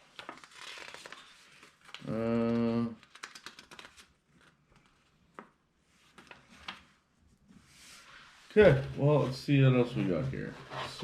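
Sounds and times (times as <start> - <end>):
man humming: 2.0 - 3.0
clicks and rustles of packaging: 3.0 - 4.1.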